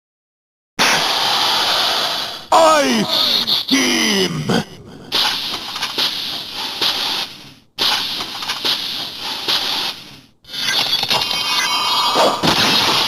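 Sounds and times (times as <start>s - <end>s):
hissing steam blasts: 0.9s - 2.5s.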